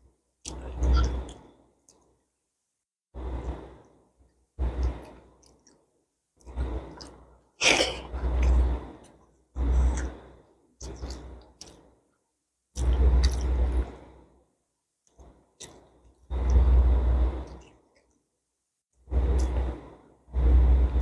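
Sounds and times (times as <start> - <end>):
person chewing and smacking: 6.4 - 7.2, 10.8 - 11.9, 12.8 - 13.6
breath or slurp: 6.4 - 8.9.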